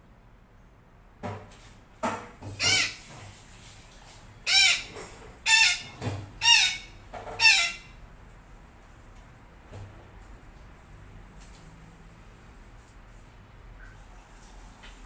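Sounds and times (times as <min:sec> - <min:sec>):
parakeet squawking: 0:02.6 - 0:03.1, 0:04.5 - 0:07.9.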